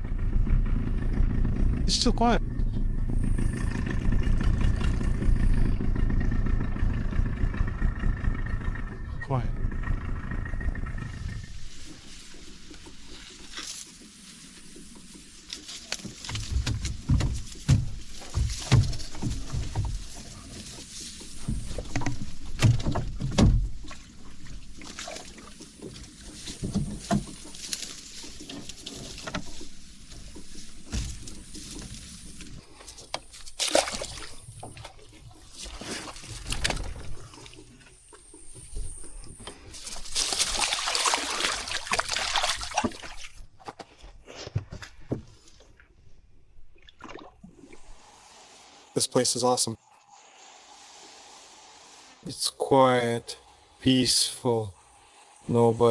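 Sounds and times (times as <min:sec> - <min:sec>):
knocks and bumps in a boat: 0:00.0 - 0:47.9
water sloshing against hull: 0:02.6 - 0:49.0
rushing water splash: 0:33.4 - 0:37.8, 0:39.6 - 0:43.5.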